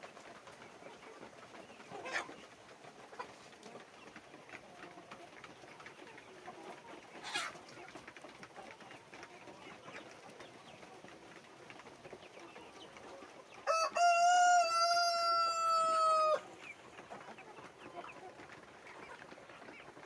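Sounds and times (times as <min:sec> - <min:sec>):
rooster crowing: 0:13.6 - 0:16.4.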